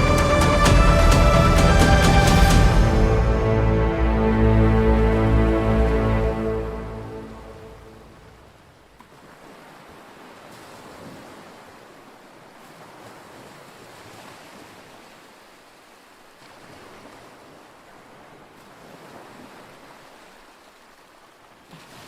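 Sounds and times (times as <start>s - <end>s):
strong wind blowing: 0.0s - 8.7s
sea surf washing onto beach: 0.0s - 22.0s.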